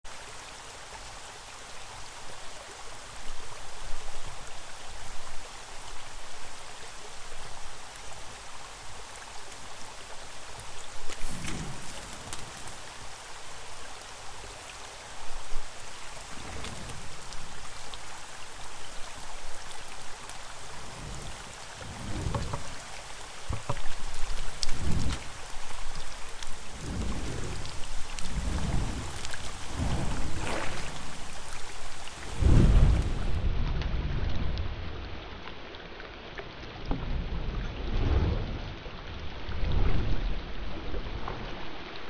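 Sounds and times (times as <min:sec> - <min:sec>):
steady rain hiss: 0:00.0 - 0:42.0
flaming sword whooshing: 0:11.2 - 0:12.8.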